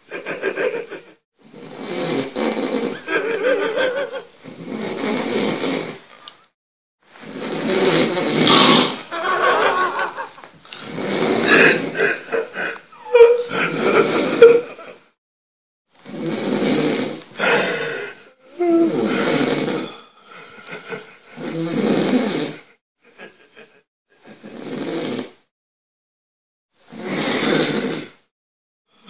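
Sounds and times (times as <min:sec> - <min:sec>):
loud snoring: 0:01.4 - 0:06.1, 0:07.2 - 0:10.0, 0:10.7 - 0:14.6, 0:16.0 - 0:22.7, 0:24.3 - 0:25.5, 0:26.9 - 0:28.3.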